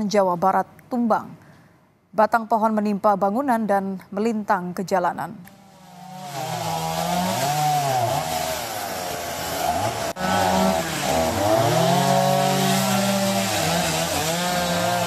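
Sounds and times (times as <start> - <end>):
chainsaw revving: 5.5 - 15.0.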